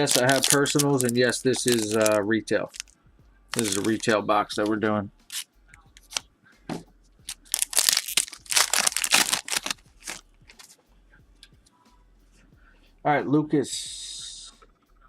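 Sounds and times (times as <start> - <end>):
foil wrapper crinkling and tearing: 0.0 - 2.9, 3.5 - 4.7, 5.3 - 6.2, 7.3 - 10.7.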